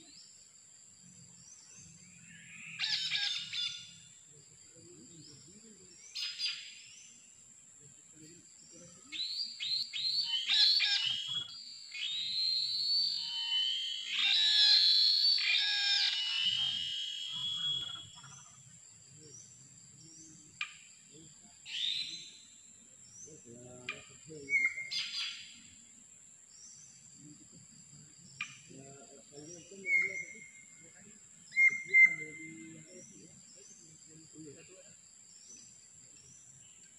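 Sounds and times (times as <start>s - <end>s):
bird whistle: 2.7s - 3.9s, 9.1s - 18.5s, 21.7s - 22.4s, 24.4s - 25.6s, 29.8s - 30.7s, 31.5s - 32.7s
starlings harsh chattering: 13.2s - 18.7s, 23.1s - 25.8s.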